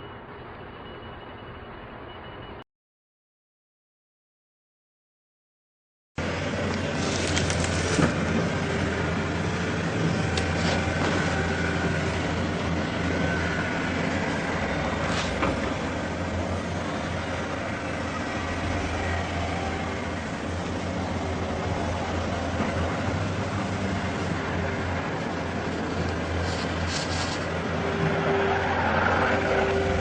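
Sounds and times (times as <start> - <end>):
rumbling background noise: 6.2 - 30.0.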